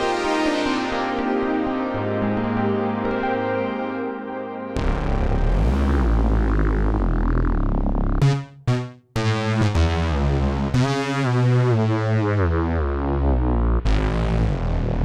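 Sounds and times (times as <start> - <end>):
synthesizer chords and stabs: 0.0 - 15.0
sustained synth line: 4.0 - 9.8.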